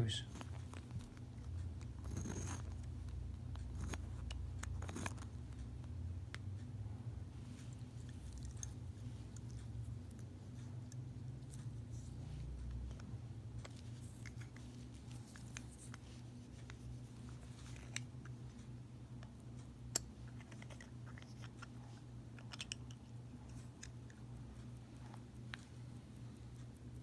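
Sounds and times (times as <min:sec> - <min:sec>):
steady low hum: 0:00.0 - 0:27.0
small clicks of watch handling: 0:07.5 - 0:19.3, 0:19.9 - 0:27.0.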